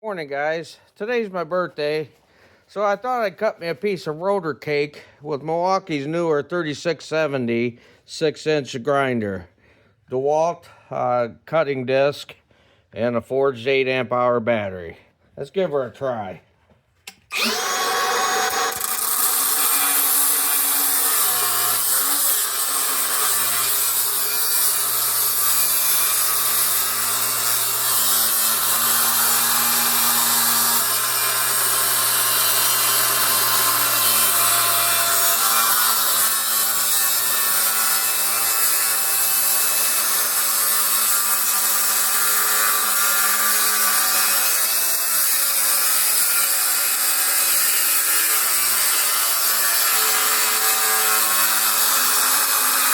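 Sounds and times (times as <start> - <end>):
grinder cutting through metal: 17.1 - 52.9.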